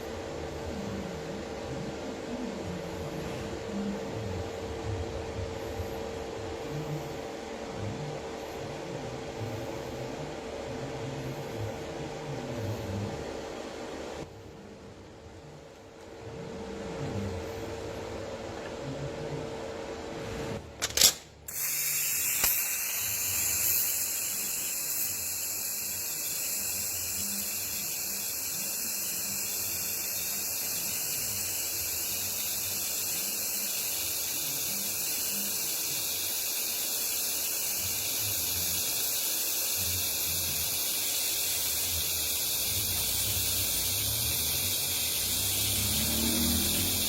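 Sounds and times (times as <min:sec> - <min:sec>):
welding arc crackling and hissing: 0:20.9 - 0:47.0.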